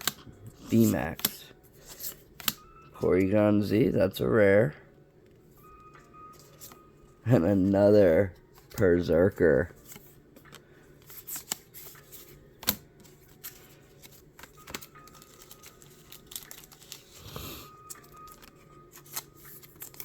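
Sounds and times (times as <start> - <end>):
card rustle: 0.0 - 2.6, 6.3 - 6.9, 7.5 - 20.0
trading cards flipped through: 0.0 - 2.6, 6.3 - 6.9, 9.7 - 20.0.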